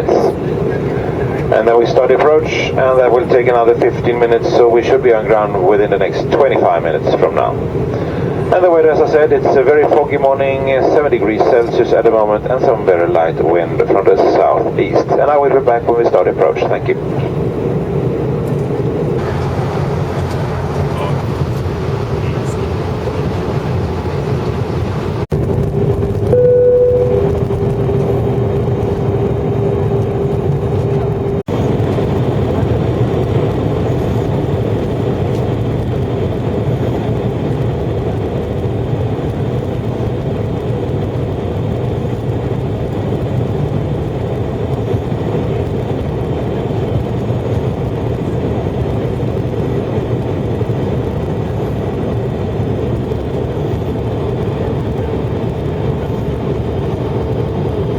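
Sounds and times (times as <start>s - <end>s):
jet airliner cabin rumble: 0.0s - 57.9s
brief higher tone: 26.3s - 27.4s.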